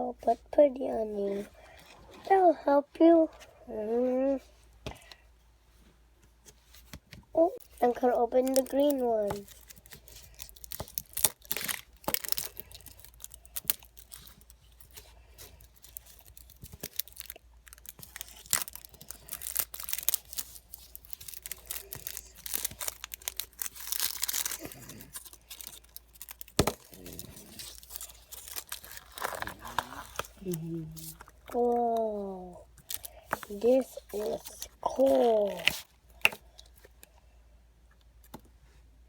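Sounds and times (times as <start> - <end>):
packaging tearing and crinkling: 7.6 - 32.0.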